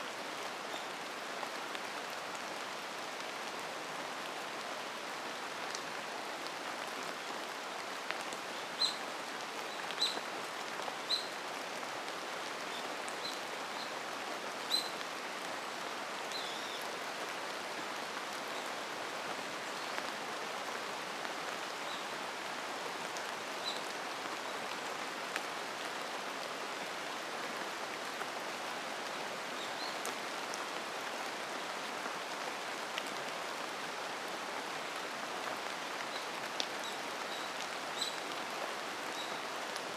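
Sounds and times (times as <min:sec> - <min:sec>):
rain on leaves: 0:00.0 - 0:39.9.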